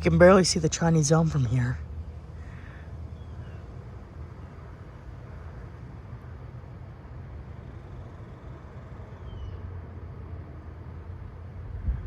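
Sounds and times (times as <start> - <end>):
wind buffeting microphone: 11.7 - 12.0.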